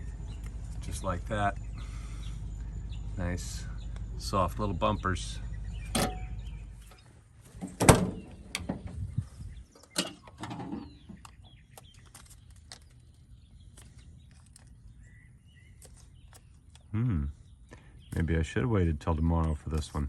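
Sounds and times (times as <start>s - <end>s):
fuel filler door clicking shut: 7.6s - 8.9s.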